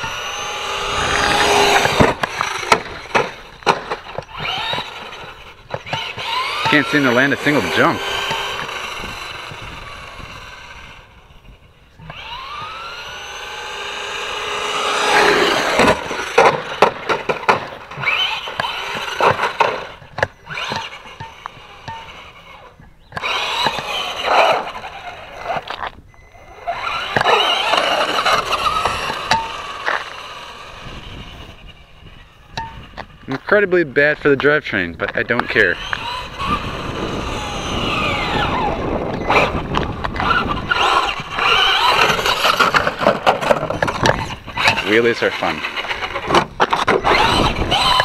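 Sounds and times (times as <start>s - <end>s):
tyres scrabbling on dirt: 0.0s - 11.1s, 11.9s - 48.0s
rc truck electric motor whining: 0.0s - 34.4s, 35.0s - 48.0s
knocks and rattles from bumps: 1.0s - 9.3s, 15.2s - 22.2s, 45.5s - 48.0s.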